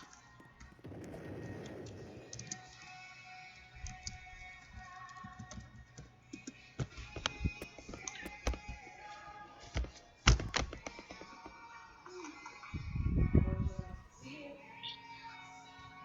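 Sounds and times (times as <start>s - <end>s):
background music: 0.0s - 16.0s
sharp taps and knocks: 5.2s - 8.8s, 9.8s - 11.6s.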